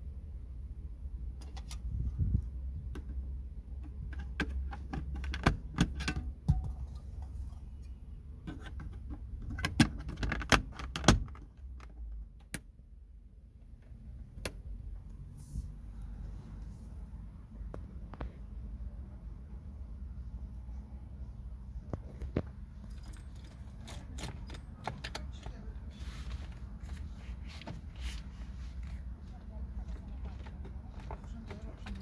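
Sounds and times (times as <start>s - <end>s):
low steady hum: 0.0s - 32.0s.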